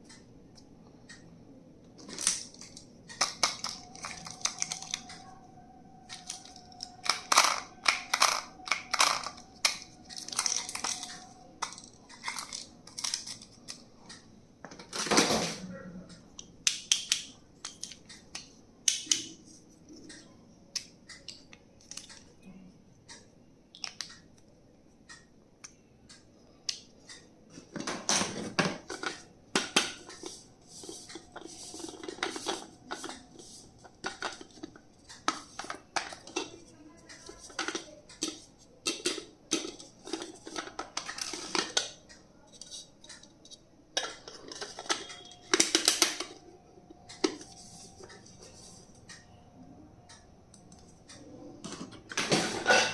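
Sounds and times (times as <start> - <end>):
clicks and taps of hard objects: 16.4 - 19.4.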